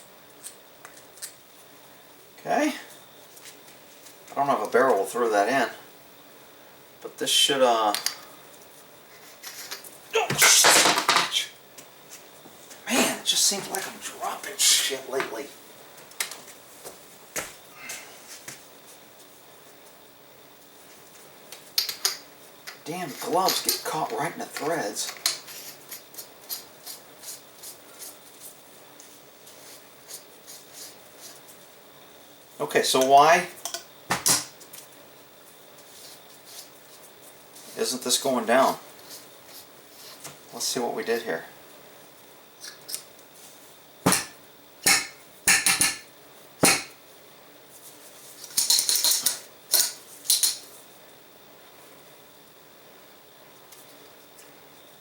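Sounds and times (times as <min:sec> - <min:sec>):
scratchy rubs of screwing parts: 0:25.3 - 0:28.6, 0:29.5 - 0:31.6, 0:35.8 - 0:37.8
metal parts clinking: 0:48.5 - 0:50.6.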